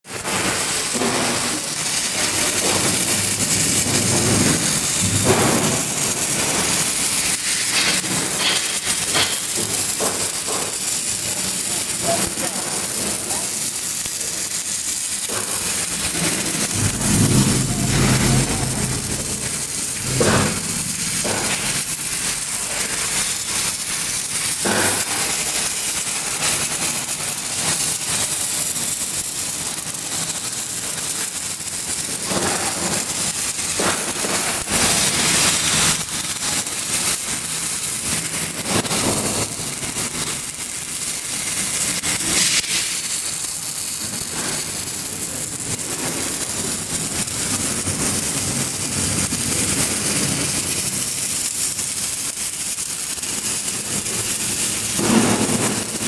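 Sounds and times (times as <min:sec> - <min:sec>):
welding arc crackling sizzle: 0:00.0 - 0:56.0.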